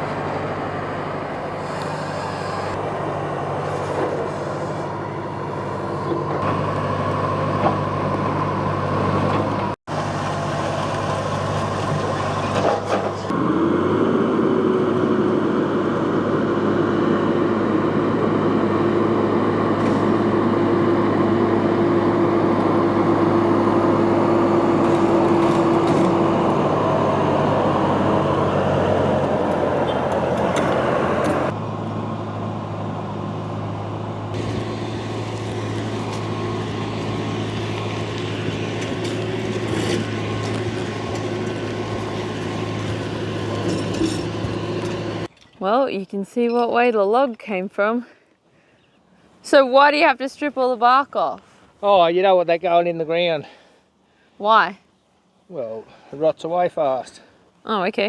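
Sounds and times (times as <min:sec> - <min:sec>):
farm machinery engine running: 0:00.0 - 0:45.3.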